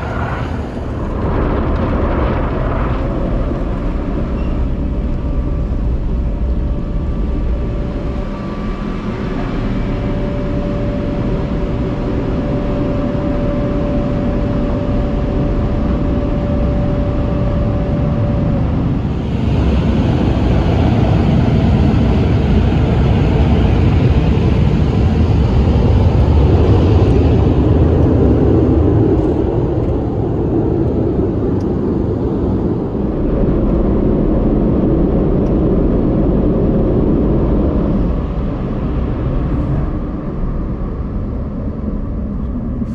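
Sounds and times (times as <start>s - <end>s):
blower whine: 0.0s - 42.9s
dryer blowers running: 4.9s - 33.7s.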